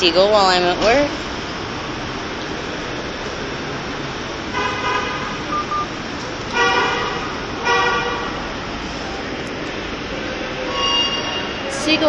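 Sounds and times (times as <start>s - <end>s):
city traffic noise: 0.0s - 12.0s
vehicle horns honking: 4.5s - 5.9s, 6.5s - 8.4s.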